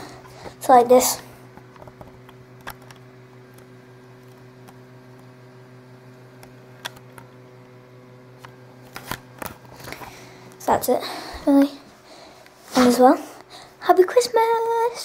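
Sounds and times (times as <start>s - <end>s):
low hum: 0.0s - 13.8s
camcorder handling clicks: 6.4s - 7.3s.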